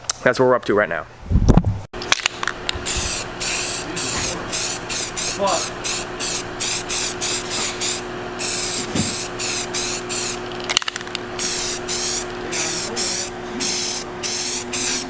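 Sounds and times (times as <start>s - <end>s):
spray can hissing: 2.8s - 10.4s, 11.4s - 15.0s.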